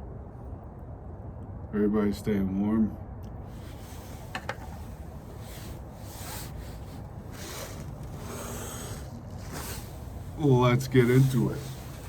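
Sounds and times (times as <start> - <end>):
rubbing and rustling: 3.4 - 12.0.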